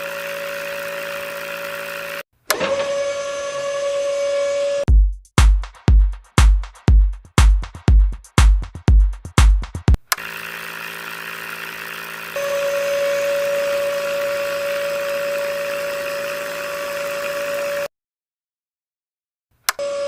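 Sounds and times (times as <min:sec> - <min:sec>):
small electric motor humming: 0:00.0 - 0:04.9, 0:10.0 - 0:17.9.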